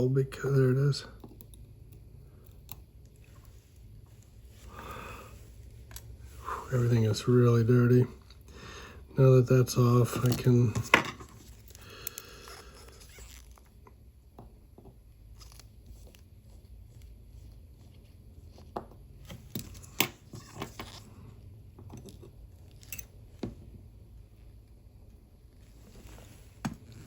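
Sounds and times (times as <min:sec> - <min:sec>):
small tools clicking and scraping: 0:21.8 - 0:23.2.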